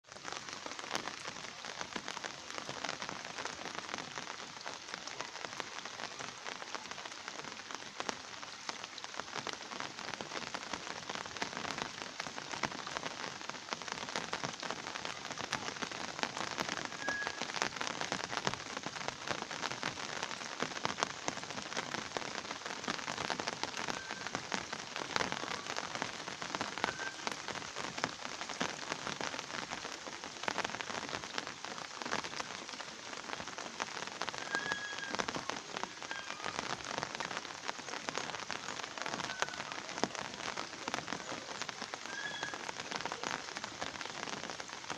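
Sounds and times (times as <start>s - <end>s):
rain falling: 0.0s - 44.9s.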